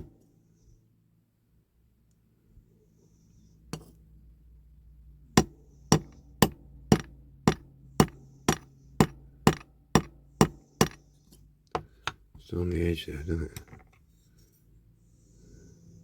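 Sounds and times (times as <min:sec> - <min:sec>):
small hammer tapping metal: 0:05.4 - 0:11.1.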